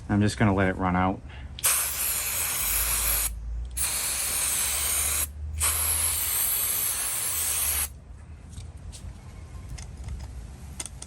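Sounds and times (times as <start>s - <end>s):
aerosol spray can hissing: 1.6s - 7.9s.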